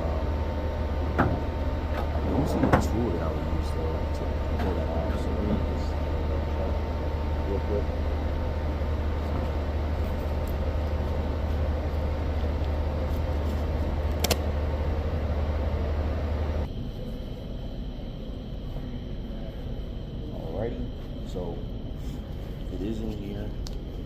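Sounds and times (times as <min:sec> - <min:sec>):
low mechanical hum: 0:00.0 - 0:24.0
sharp click: 0:14.1 - 0:14.5.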